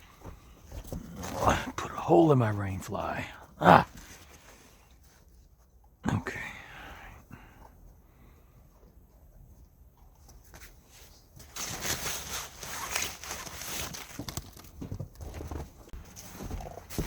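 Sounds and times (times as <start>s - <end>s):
tent fabric rustling: 10.6s - 14.3s.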